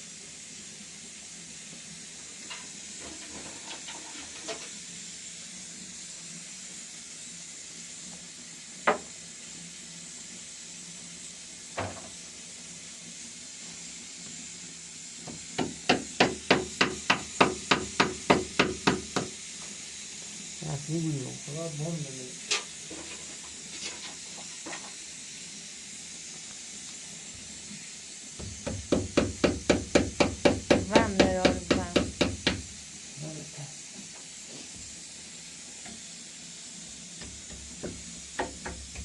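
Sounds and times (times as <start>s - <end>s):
steady hiss: 0.0s - 39.0s
hammer strikes: 15.6s - 19.3s, 28.6s - 32.6s.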